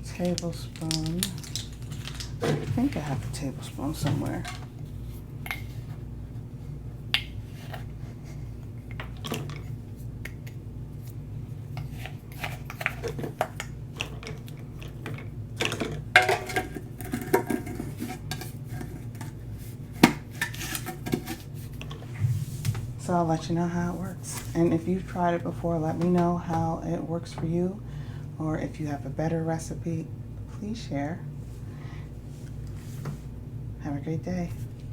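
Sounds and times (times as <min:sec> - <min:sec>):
low hum: 0:21.8 - 0:27.2.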